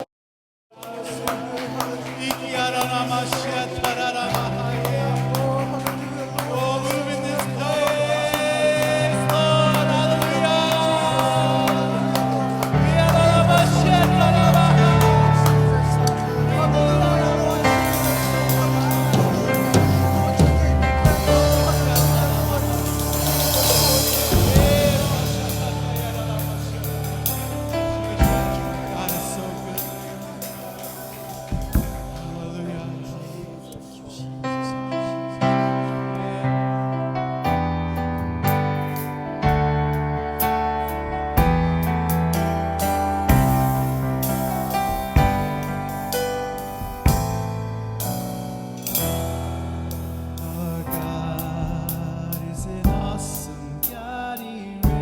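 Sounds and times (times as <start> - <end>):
people singing: 0.7 - 37.6, 50.4 - 55.0
worship band music: 0.7 - 55.0
keyboard and bass chords: 1.4 - 55.0
bass line: 6.7 - 33.0
drum beat: 9.3 - 32.8, 42.4 - 49.2
cymbal strikes: 15.4 - 32.5.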